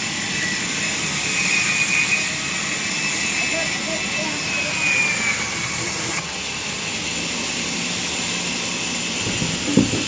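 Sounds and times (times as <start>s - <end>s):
sawmill machinery running: 0.0s - 10.0s
knock: 9.3s - 10.0s.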